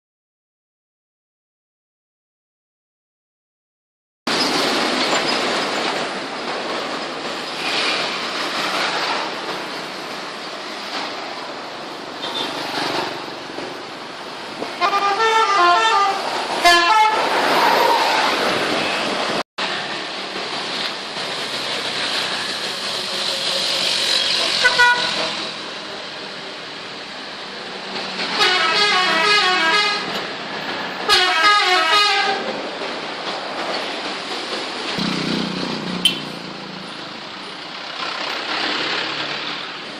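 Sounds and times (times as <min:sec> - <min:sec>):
traffic noise: 0:04.3 - 0:39.9
musical bus air horns: 0:14.7 - 0:17.3, 0:24.5 - 0:25.4, 0:28.3 - 0:30.2, 0:31.0 - 0:32.5, 0:36.0 - 0:36.4.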